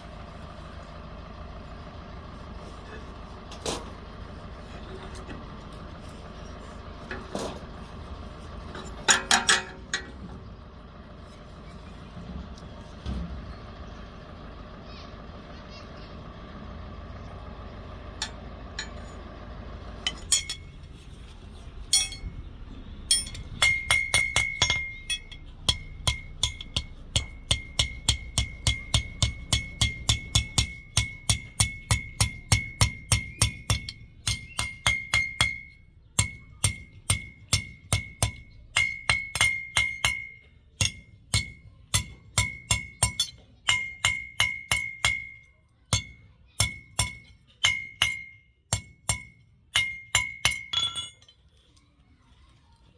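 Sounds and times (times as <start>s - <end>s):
hammer striking steel: 8.8s - 10.2s, 18.2s - 19.2s, 20.0s - 20.8s, 21.9s - 22.4s, 23.1s - 51.4s.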